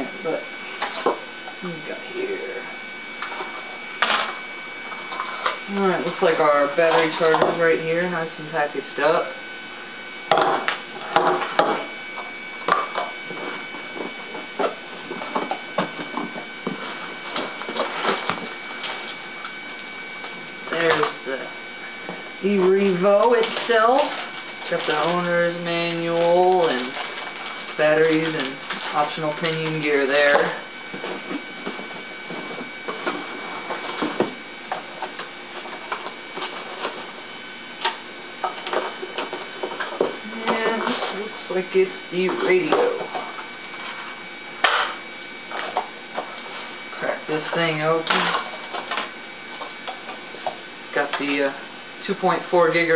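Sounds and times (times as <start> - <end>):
steady hum: 0.0 - 52.9
packaging rustling and crinkling: 25.9 - 41.2.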